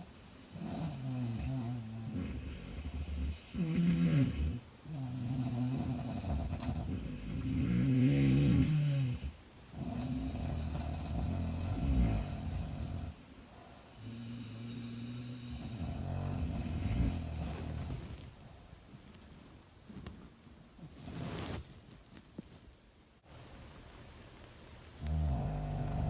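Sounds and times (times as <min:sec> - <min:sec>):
girl snoring: 0:00.6 - 0:13.2, 0:14.0 - 0:18.1, 0:25.0 - 0:26.0.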